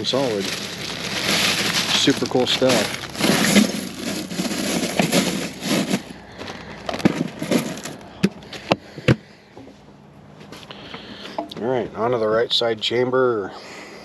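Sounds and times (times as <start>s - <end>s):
plastic packaging crinkling: 0.0s - 8.1s.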